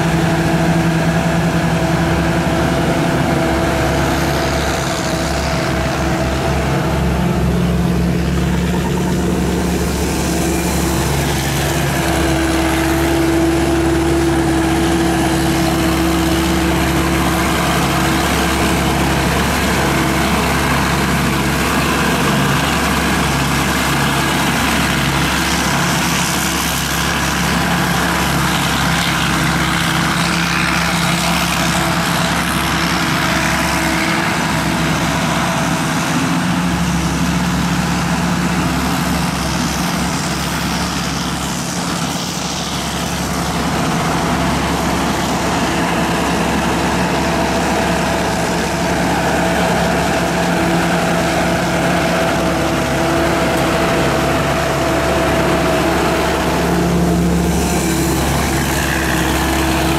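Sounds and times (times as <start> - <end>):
diesel engine droning: 0.0 - 59.9.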